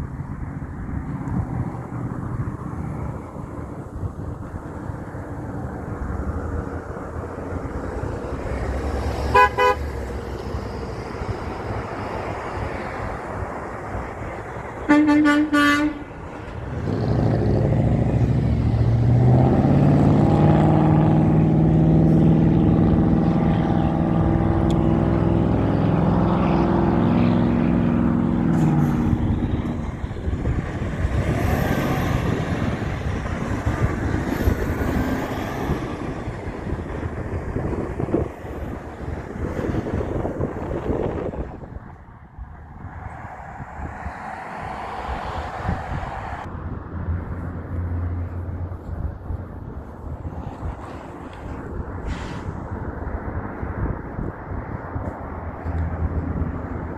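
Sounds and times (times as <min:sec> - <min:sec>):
truck engine droning: 0:00.0 - 0:41.7
truck horn blast: 0:09.3 - 0:10.1, 0:14.8 - 0:16.2.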